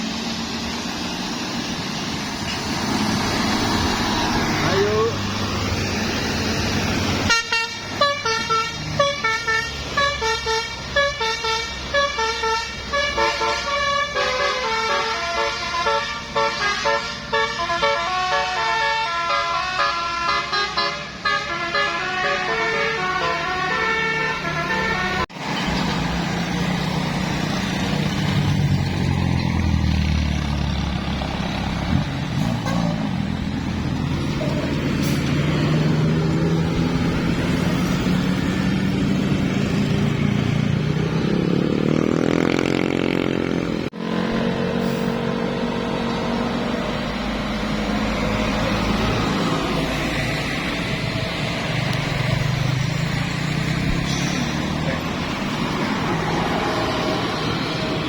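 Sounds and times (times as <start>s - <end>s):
musical multi-tone bus horn: 7.1s - 25.4s, 32.4s - 33.1s
heavy vehicle engine pulling: 21.1s - 58.0s.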